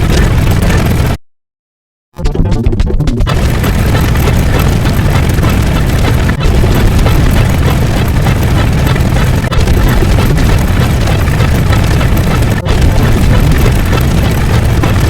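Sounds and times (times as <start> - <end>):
loud continuous rumbling: 0.0 - 1.2, 3.2 - 15.0.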